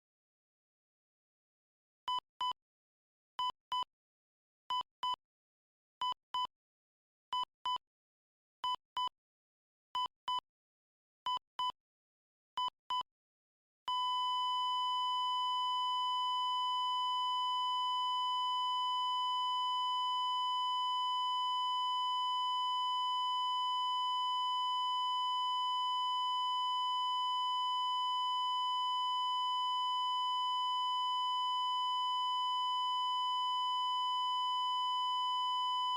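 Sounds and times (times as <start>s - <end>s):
heart monitor beeps and flatline: 2.1s - 2.6s, 3.4s - 3.9s, 4.7s - 5.2s, 6.0s - 6.5s, 7.3s - 7.8s, 8.6s - 9.2s, 10.0s - 10.4s, 11.3s - 11.8s, 12.6s - 13.1s, 13.9s - 35.9s.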